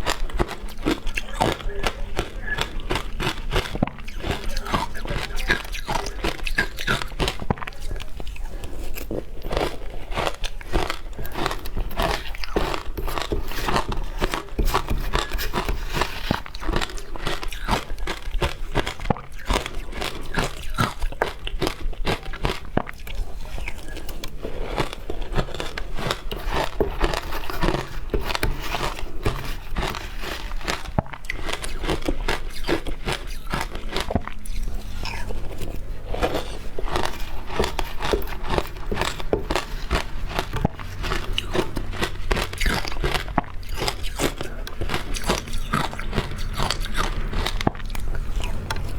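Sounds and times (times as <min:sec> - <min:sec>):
ice being chewed with crunches: 0:00.0 - 0:48.9.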